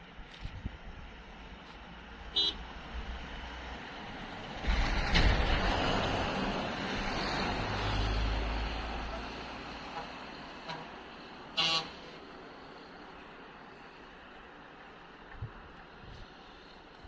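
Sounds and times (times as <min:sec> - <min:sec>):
passing vehicle rumble: 0:02.7 - 0:16.7
short vehicle horn toot: 0:11.6 - 0:12.0.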